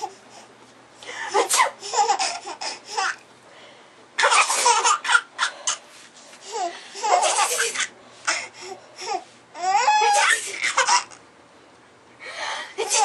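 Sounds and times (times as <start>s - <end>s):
baby laughing: 1.3s - 3.2s, 4.2s - 5.8s, 6.4s - 11.2s, 12.8s - 13.0s.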